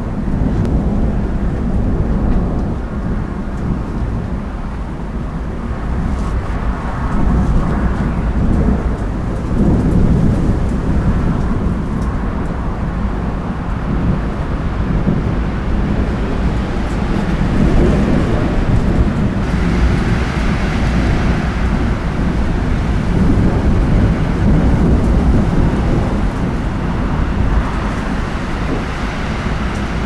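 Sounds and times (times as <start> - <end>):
thunder rumbling: 0.0 - 30.0
light rain ticking: 6.6 - 30.0.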